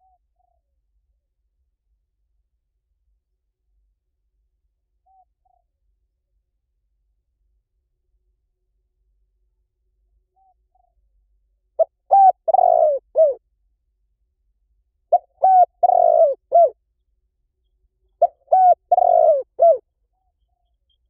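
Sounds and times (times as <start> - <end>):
dove cooing: 11.8 - 13.4, 15.1 - 16.8, 18.2 - 19.8.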